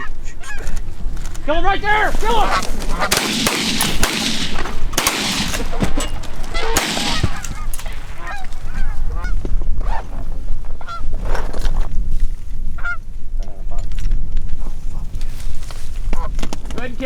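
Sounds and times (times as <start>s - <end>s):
geese honking: 1.6s - 10.0s
sharp clicks: 2.6s - 8.5s.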